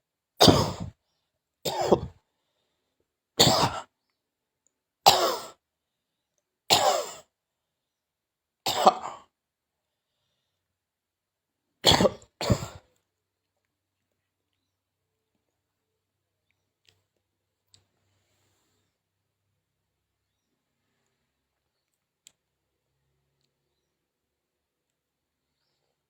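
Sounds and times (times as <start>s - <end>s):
person coughing: 0.4s - 0.9s, 1.7s - 2.2s, 3.4s - 3.9s, 5.1s - 5.6s, 6.7s - 7.2s, 8.7s - 9.3s, 11.8s - 12.8s.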